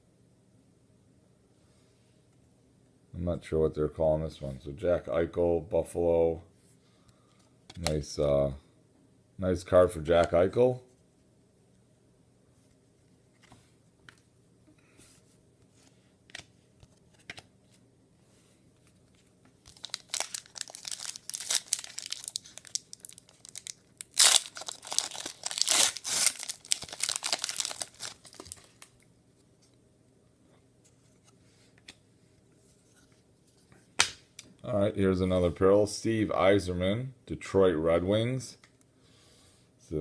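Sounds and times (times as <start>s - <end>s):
wrapper tearing and crinkling: 19.6s - 28.9s.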